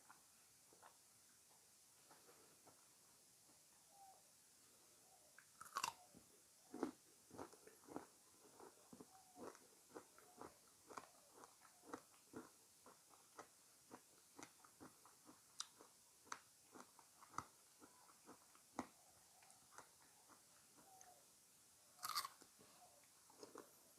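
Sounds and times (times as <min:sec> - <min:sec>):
person chewing: 0:00.0 - 0:01.0, 0:05.4 - 0:06.0, 0:06.7 - 0:21.1, 0:22.0 - 0:22.6, 0:23.2 - 0:23.9
crunching bites into fruit: 0:05.4 - 0:06.1, 0:06.7 - 0:19.0, 0:22.0 - 0:22.5.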